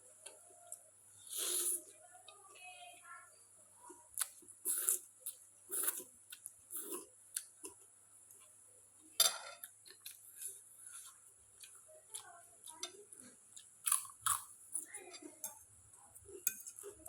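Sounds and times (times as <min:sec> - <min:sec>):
cutlery clicking against dish: 0:16.4 - 0:17.0.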